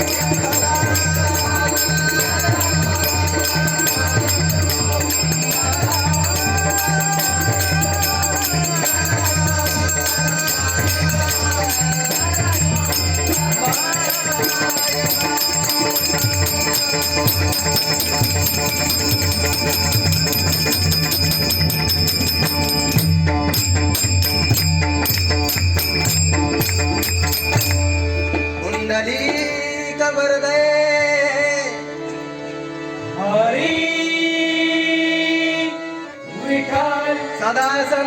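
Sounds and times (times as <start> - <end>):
hand cymbals clashing: 0.0 - 28.6
tabla beats: 0.0 - 31.6.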